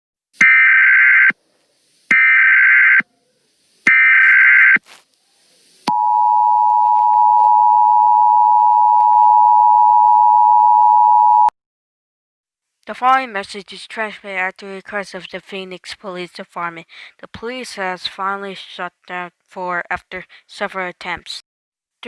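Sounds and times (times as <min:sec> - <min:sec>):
data burst tones: 0:02.1 - 0:03.0, 0:03.8 - 0:04.8.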